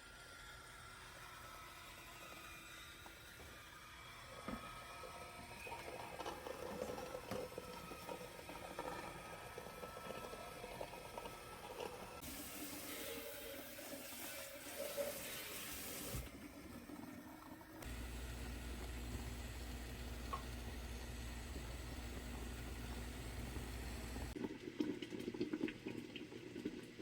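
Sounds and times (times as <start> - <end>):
tap running: 4.4 - 12.4, 17.0 - 24.4.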